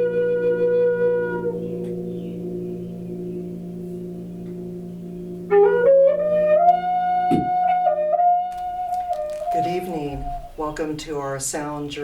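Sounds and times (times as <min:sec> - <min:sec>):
flute playing: 0:00.0 - 0:02.4, 0:05.4 - 0:10.7.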